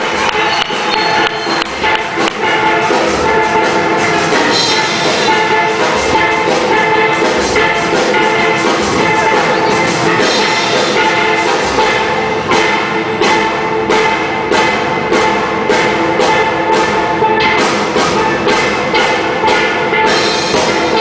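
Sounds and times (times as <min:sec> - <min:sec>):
steel band playing: 0:00.0 - 0:21.0.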